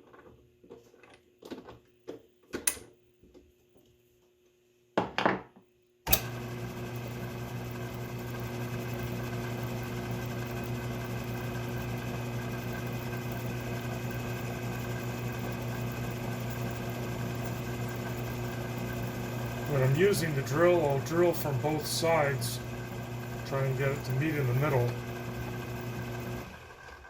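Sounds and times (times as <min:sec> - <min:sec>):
lathe motor humming: 0:06.1 - 0:27.0.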